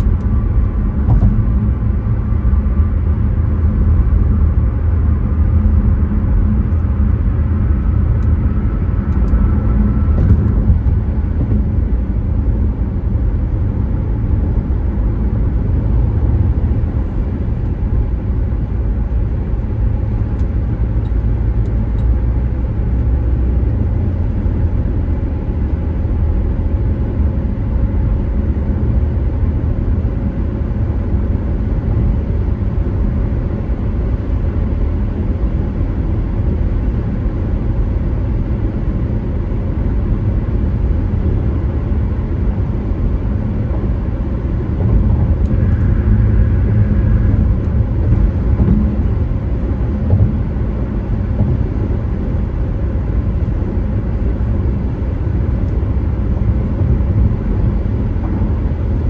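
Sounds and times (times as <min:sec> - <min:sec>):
car road and engine rumble: 0:00.0 - 0:59.0.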